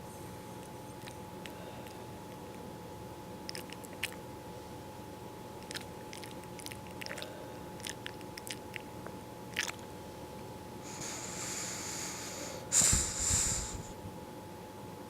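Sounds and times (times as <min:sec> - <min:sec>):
faint steady hum: 0:00.0 - 0:15.0
pet mouth clicks and smacks: 0:03.5 - 0:04.2, 0:05.6 - 0:09.8.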